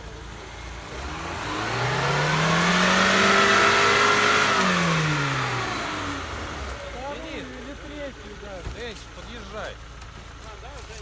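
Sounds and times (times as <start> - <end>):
vehicle engine revving: 0.0 - 8.6.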